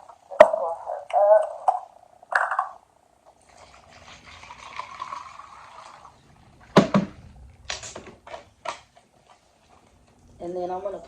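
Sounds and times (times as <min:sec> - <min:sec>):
liquid pouring into a cup: 0:03.4 - 0:06.4.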